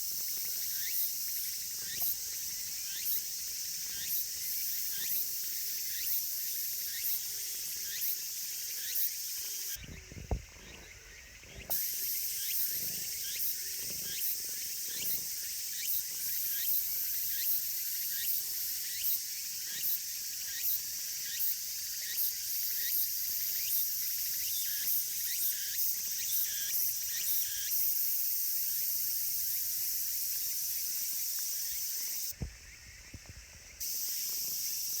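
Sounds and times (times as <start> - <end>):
pulsing insect buzz: 0.2 - 6.3, 7.8 - 20.6
soft low thumps: 9.8 - 11.7.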